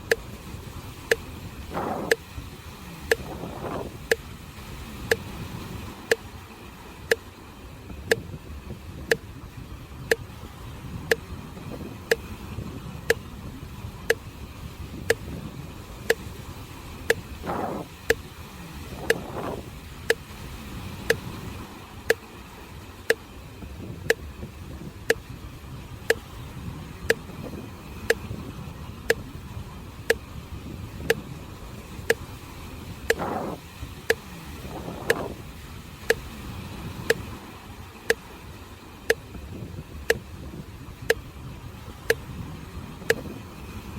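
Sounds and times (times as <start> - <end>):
metronome ticking: 0.0 - 0.2, 1.1 - 2.2, 3.0 - 4.2, 8.1 - 8.3, 12.0 - 12.3, 14.0 - 14.3, 15.1 - 15.3, 17.1 - 18.3, 19.0 - 20.3, 21.0 - 21.3, 24.0 - 24.3, 33.1 - 34.2, 39.1 - 39.3
sea waves on the shore: 0.0 - 43.9.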